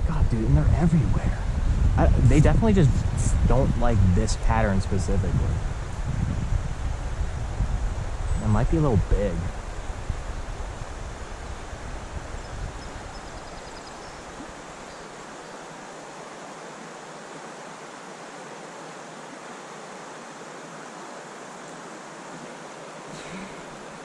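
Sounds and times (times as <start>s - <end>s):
wind buffeting microphone: 0.0s - 14.9s
creek water rushing: 0.0s - 24.0s.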